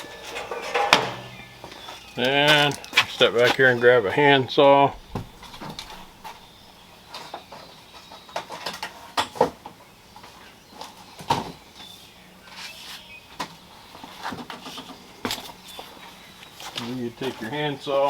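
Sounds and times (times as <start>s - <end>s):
knocks and clunks of handling: 0.0s - 3.7s.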